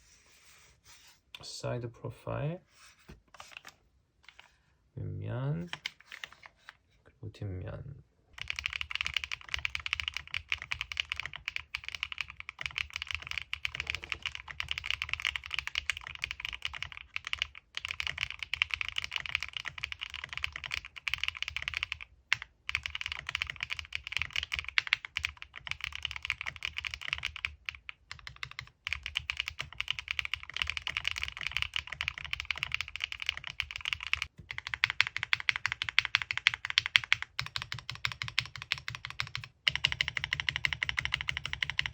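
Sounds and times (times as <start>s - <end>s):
mechanical keyboard typing: 8.4s - 41.9s.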